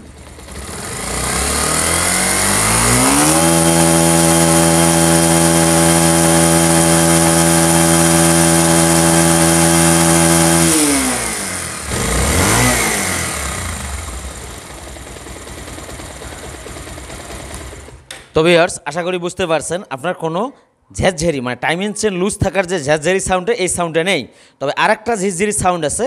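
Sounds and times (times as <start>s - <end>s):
motorcycle engine revving: 0.0s - 18.1s.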